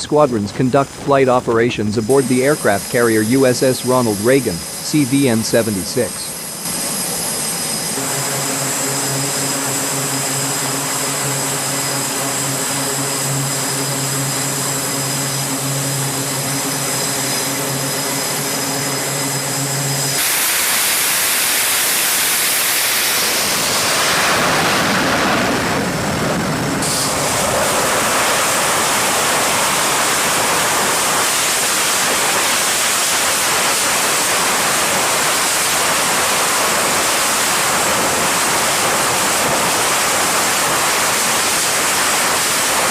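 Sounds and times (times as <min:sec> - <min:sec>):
jet engines whining: 0:00.0 - 0:42.9
loud even rushing noise: 0:16.3 - 0:42.9.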